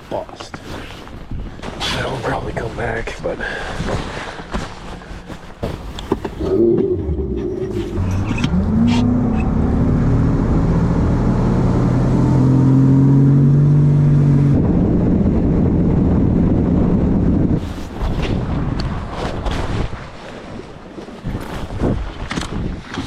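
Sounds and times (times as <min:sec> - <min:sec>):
outboard motor speeding up: 0:06.4 - 0:17.6.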